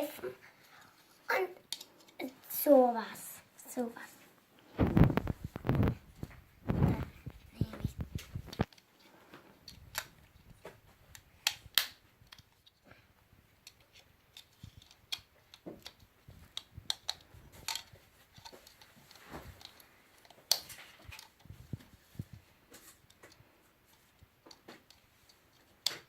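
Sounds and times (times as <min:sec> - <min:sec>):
loud plastic snaps: 0:11.4 - 0:12.5, 0:14.3 - 0:21.5
plastic bricks clicking together: 0:13.6 - 0:21.5.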